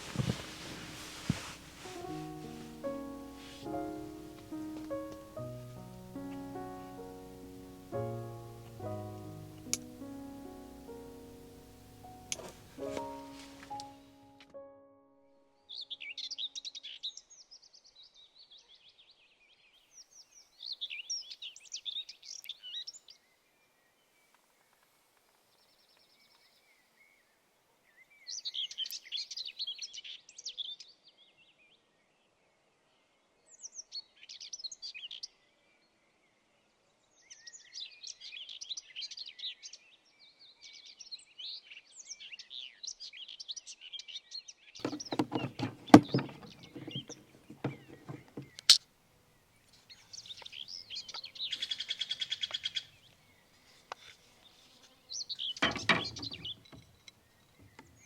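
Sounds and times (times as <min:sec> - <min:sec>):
songbird warbling: 0:44.8 - 0:48.8, 0:55.2 - 0:58.0.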